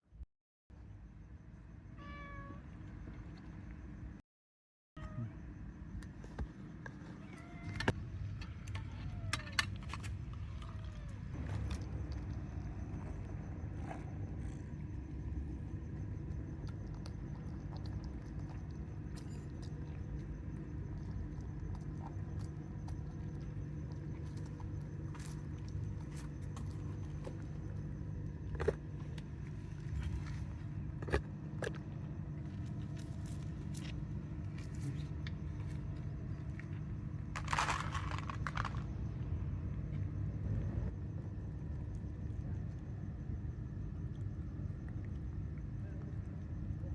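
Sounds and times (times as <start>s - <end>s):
city traffic rumble: 5.1s - 43.2s.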